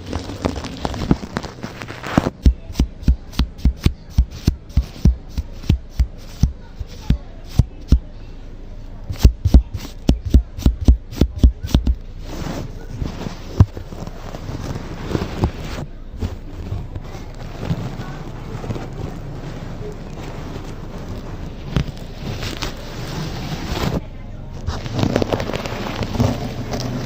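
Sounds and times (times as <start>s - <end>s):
scratchy brushing on microphone: 0.0s - 8.0s, 9.1s - 27.0s
sharp taps with thuds: 2.1s - 8.1s, 9.1s - 12.0s.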